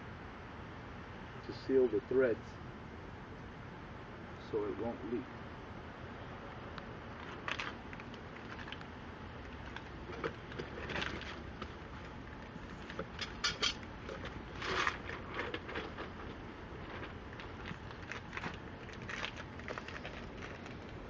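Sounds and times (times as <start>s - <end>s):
tools scraping and clicking on pipe: 12.8s - 17.6s.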